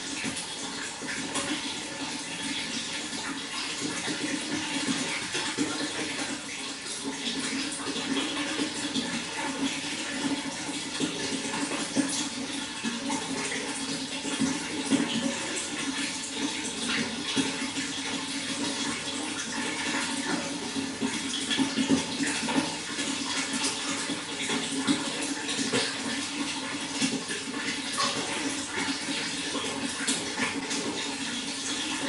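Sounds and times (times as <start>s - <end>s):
water flowing: 0.0s - 32.0s
small water splashes: 16.5s - 32.0s.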